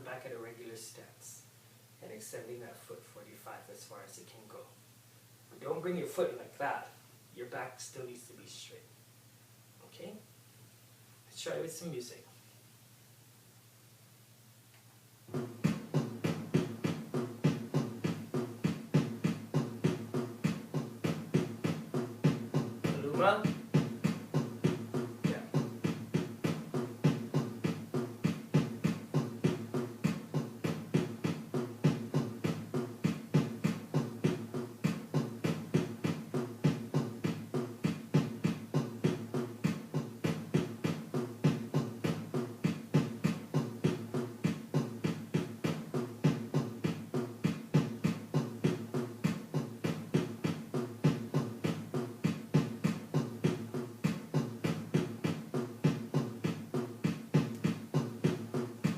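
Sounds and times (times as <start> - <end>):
dance music with fast beat: 15.3 - 58.9.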